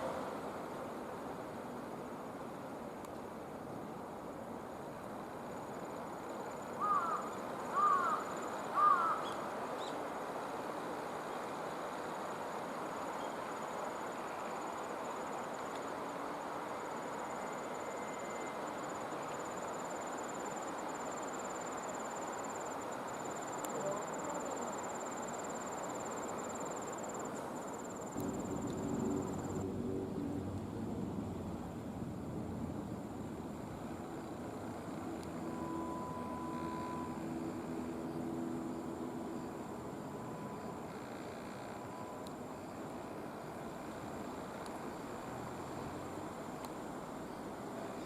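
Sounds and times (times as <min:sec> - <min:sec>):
background hiss: 0:00.0 - 0:48.0
short insect calls: 0:05.4 - 0:10.1, 0:11.0 - 0:29.6, 0:33.7 - 0:48.0
insect high trill: 0:05.6 - 0:09.4, 0:12.6 - 0:29.7, 0:34.1 - 0:42.8.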